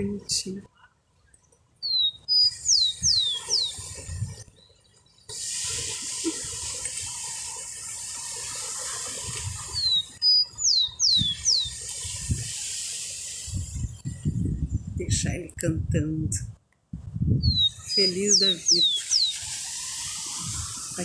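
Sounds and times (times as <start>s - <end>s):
songbird singing: 0.0s - 5.3s, 9.1s - 12.6s, 17.3s - 21.0s
steady high hiss: 17.8s - 21.0s.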